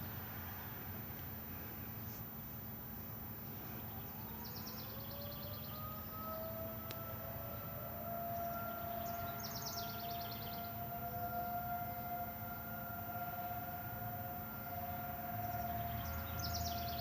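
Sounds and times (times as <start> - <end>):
warning siren wailing: 3.8 - 17.0.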